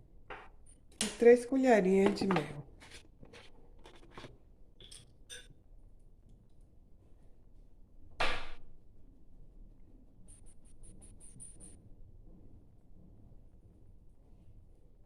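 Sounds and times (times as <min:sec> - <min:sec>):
spoon scraping dish: 0:02.0 - 0:05.4.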